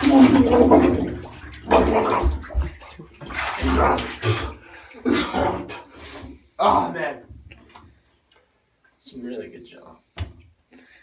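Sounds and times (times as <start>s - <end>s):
water sloshing in a bathtub: 0.0s - 8.5s.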